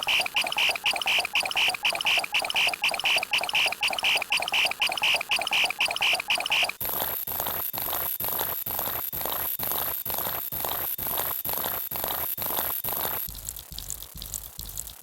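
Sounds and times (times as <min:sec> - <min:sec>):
steady very high tone: 0:00.0 - 0:06.7
noisy pulsing sound effect: 0:00.0 - 0:06.8.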